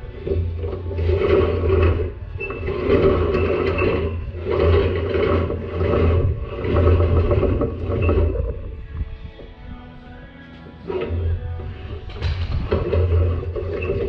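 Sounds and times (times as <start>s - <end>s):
metal bar scraping: 0.0s - 14.0s.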